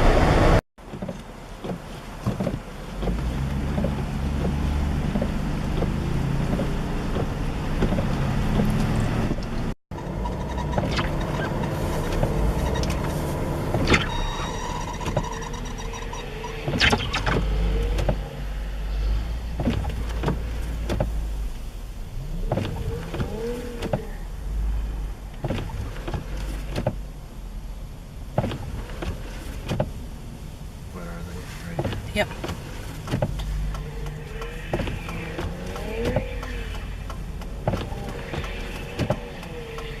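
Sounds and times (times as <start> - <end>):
vehicle whine: 0.0 - 40.0
vehicle engine running: 2.6 - 15.1.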